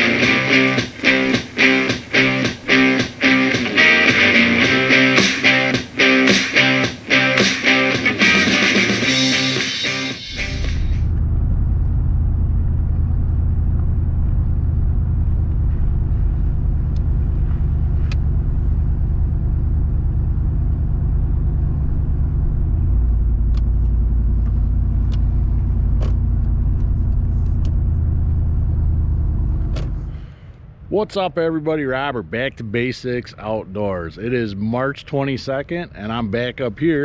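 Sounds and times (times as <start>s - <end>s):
vehicle driving low rumble: 10.3s - 32.8s.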